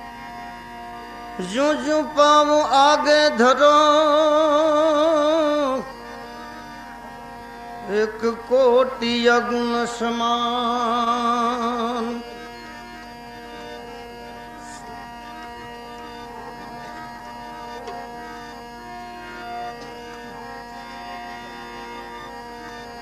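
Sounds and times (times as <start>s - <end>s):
sustained melodic instrument notes: 0.0s - 23.0s
man singing devotional song: 1.4s - 6.0s, 7.8s - 13.2s, 14.5s - 15.5s.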